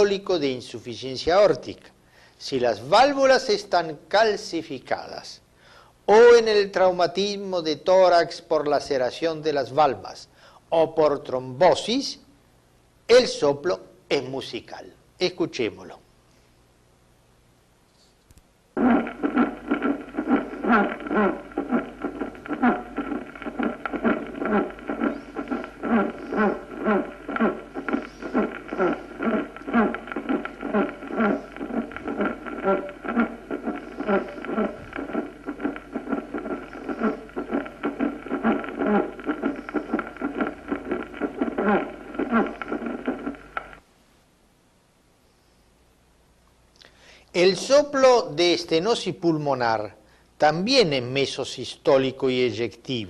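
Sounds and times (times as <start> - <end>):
heartbeat: 18.8 - 43.8
musical heart murmur tone: 18.8 - 43.8.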